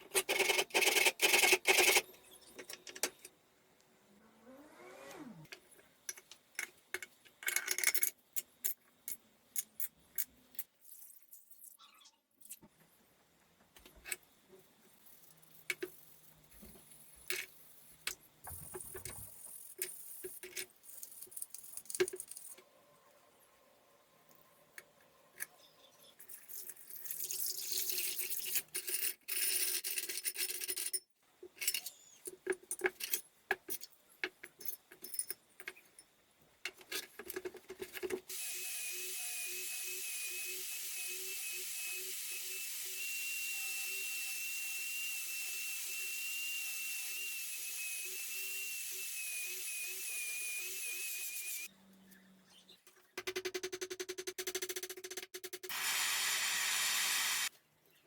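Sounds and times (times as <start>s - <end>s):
rotary tool whining: 4.4s - 5.5s, 38.3s - 51.7s, 55.7s - 57.5s
metal parts clicking and tapping: 5.5s - 10.8s, 28.1s - 38.3s.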